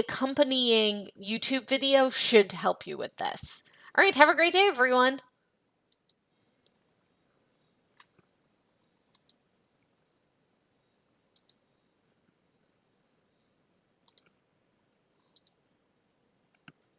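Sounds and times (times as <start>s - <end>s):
faint room hiss: 0.0s - 16.9s
computer mouse button clicking: 9.1s - 9.4s, 11.3s - 11.6s, 14.0s - 14.4s, 15.3s - 15.6s.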